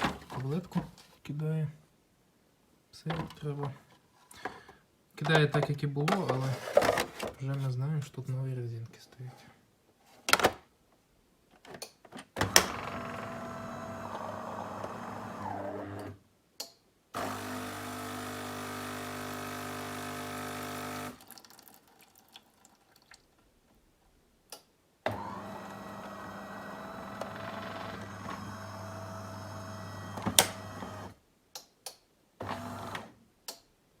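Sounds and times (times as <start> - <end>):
coffee machine motor and pump hum: 12.5 - 16.1, 17.2 - 21.2, 25.1 - 31.1, 32.4 - 33.1.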